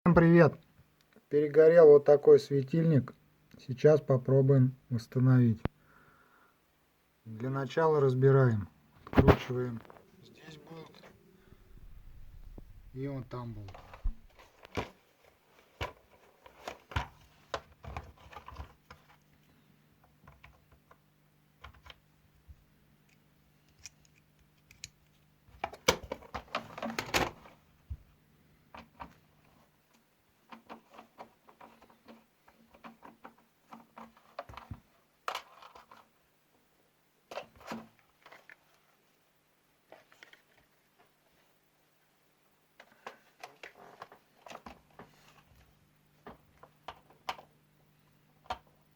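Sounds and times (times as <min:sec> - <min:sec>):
faint low hum: 0:00.1 - 0:48.9
small parts clicking and scraping: 0:23.1 - 0:25.2.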